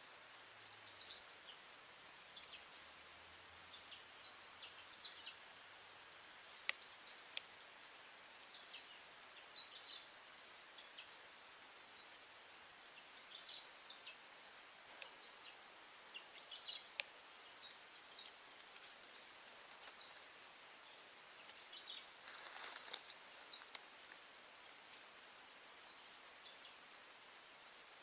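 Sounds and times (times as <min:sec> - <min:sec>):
soft steady hiss: 0:00.0 - 0:28.0
brief rustle: 0:18.2 - 0:20.3, 0:22.2 - 0:24.2.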